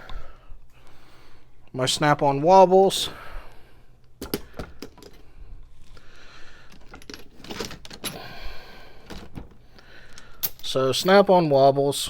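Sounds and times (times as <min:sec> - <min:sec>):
metal tools clinking in a drawer: 0:04.2 - 0:05.3, 0:06.7 - 0:08.3.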